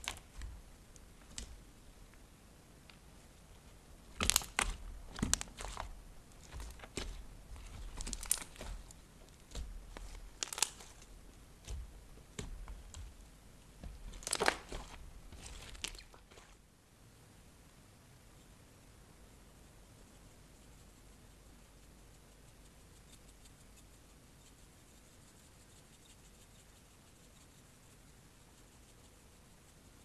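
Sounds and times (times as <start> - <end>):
slime crackling and popping: 0.0 - 1.6, 4.1 - 13.2, 13.8 - 16.6.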